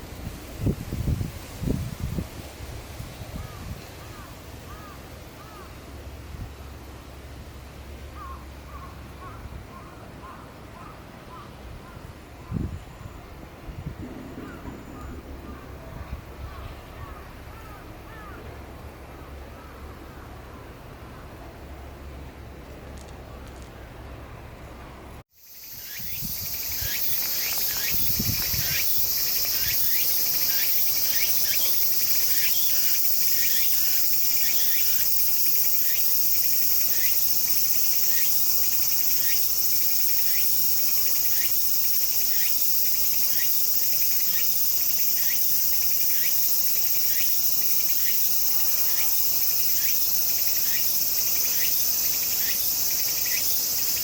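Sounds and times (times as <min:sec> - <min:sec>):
insect trill: 0:25.3 - 0:54.0
short insect chirp: 0:25.4 - 0:54.0.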